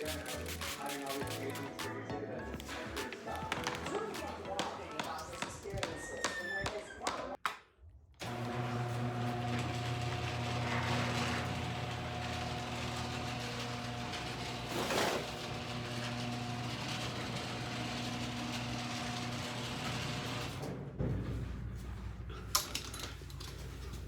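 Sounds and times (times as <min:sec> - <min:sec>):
machine humming: 0:08.2 - 0:14.7.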